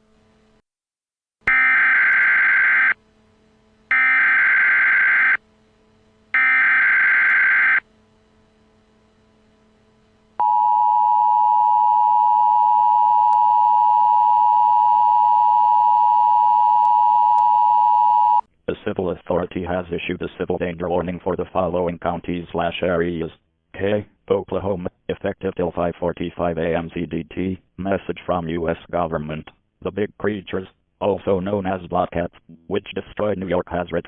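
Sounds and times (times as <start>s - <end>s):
two-tone attention signal: 10.4s - 18.4s.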